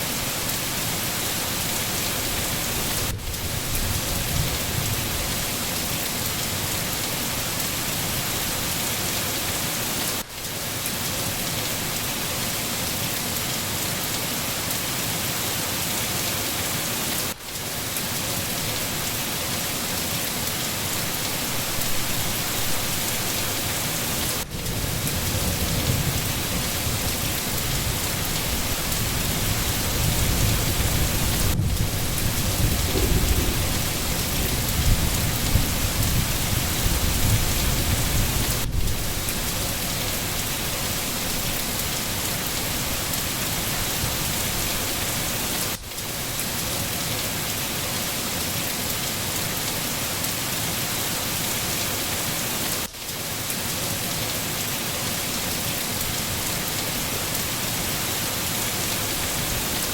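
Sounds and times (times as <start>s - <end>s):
heavy rain falling: 0.0s - 59.9s
distant thunder rumble: 24.7s - 39.3s.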